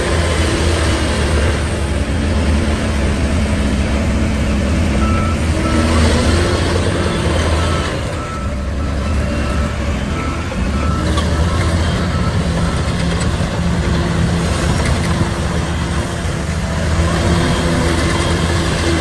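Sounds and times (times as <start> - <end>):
diesel construction machinery running: 0.0 - 19.0
reversing alarm beeping: 3.9 - 16.3.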